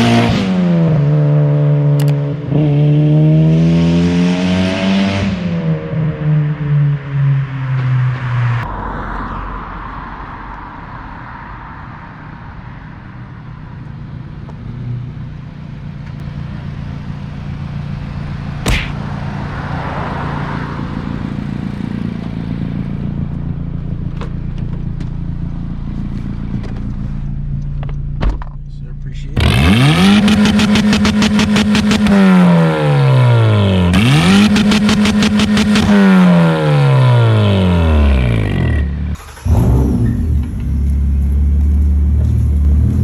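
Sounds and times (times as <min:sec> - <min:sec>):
car engine running: 0:13.8 - 0:43.0
sharp click: 0:18.6 - 0:19.0.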